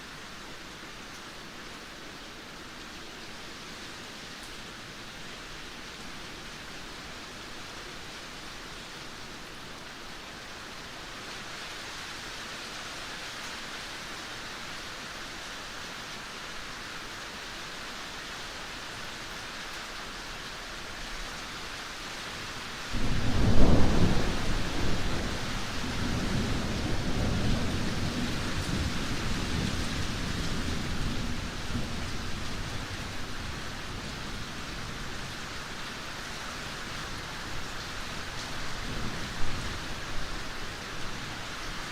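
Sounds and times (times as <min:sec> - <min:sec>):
steady rainfall: 0:00.0 - 0:41.9
thunder clap and rumble: 0:23.0 - 0:32.0.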